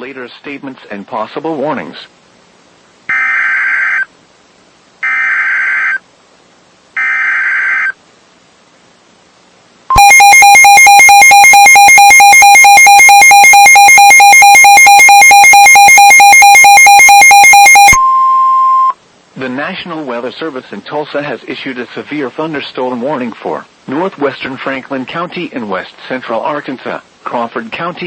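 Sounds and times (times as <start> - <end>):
harsh digital header tones: 9.9 - 18.9
pulsing two-pitch electronic alarm: 9.9 - 18.9.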